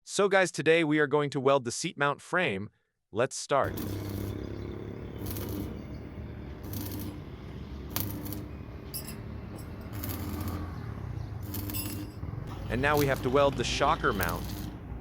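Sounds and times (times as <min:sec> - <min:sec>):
welding arc crackling: 0:03.6 - 0:15.0
steady low hum: 0:03.7 - 0:13.3.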